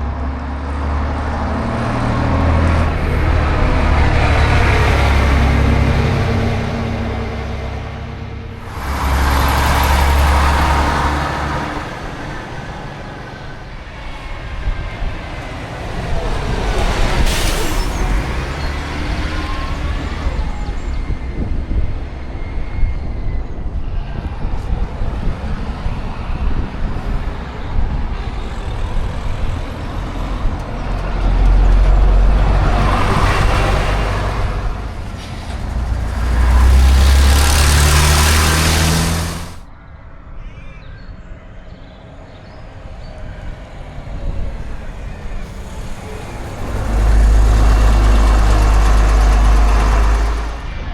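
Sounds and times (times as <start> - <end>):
diesel buses driving past: 0.0 - 39.7, 42.2 - 50.9.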